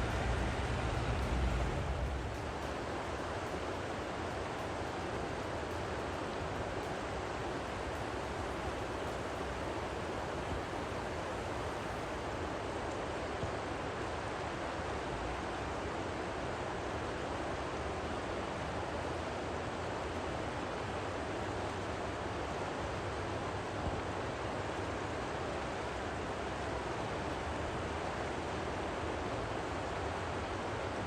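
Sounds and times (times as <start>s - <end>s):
low rumble: 0.0s - 5.4s
steady rushing noise: 0.0s - 29.6s.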